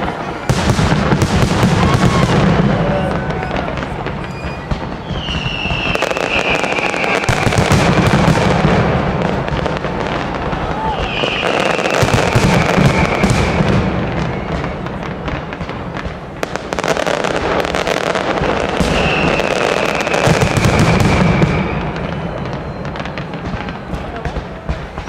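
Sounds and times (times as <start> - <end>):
fireworks bangs and crackles: 0.0 - 25.0
high falling whistle: 1.7 - 7.7, 10.8 - 14.8, 18.8 - 24.2.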